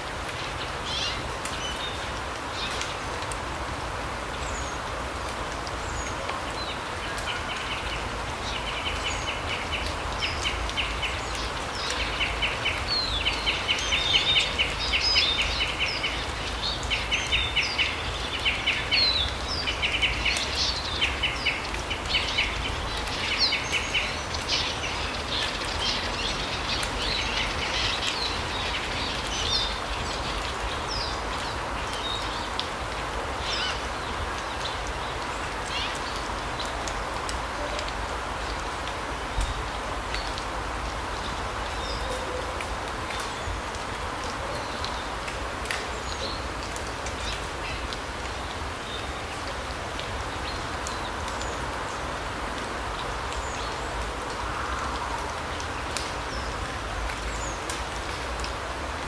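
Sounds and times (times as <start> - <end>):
forest birds calling: 5.8 - 32.6.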